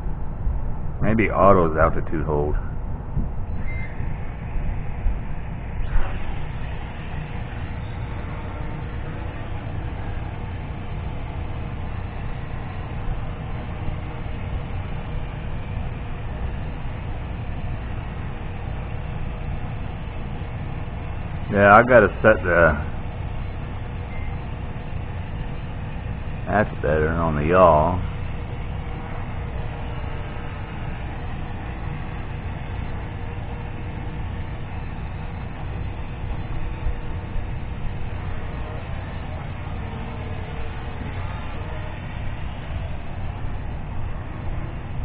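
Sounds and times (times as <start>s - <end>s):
low rumble: 0.0s - 13.4s
quadcopter propellers buzzing: 3.4s - 45.0s.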